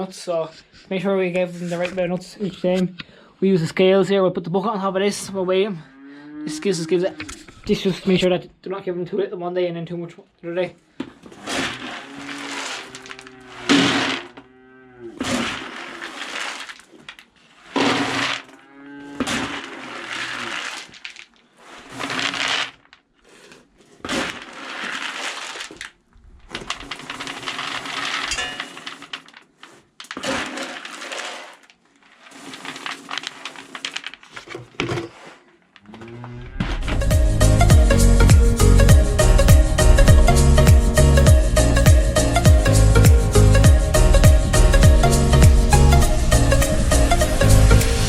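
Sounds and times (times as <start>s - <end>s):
feed pellets poured into bucket: 11.4s - 14.4s, 15.2s - 18.6s, 19.2s - 23.0s, 24.0s - 34.4s.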